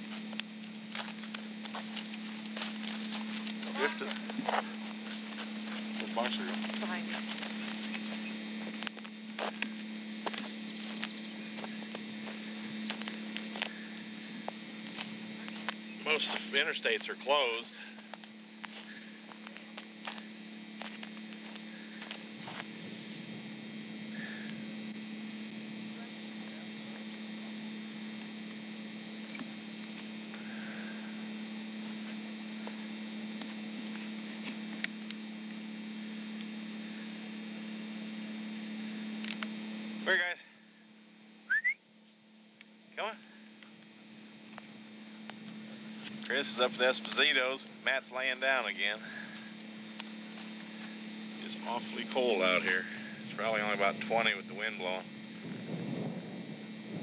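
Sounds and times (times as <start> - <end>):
faint clicks and crunches: 0.0 - 17.2, 17.8 - 23.2, 31.7 - 36.7, 39.2 - 39.7, 43.4 - 54.7
low electrical hum: 0.0 - 57.0.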